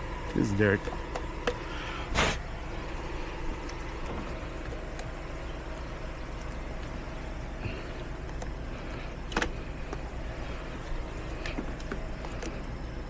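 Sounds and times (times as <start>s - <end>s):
vehicle engine idling: 0.0s - 13.0s
short sharp noise: 2.1s - 2.4s.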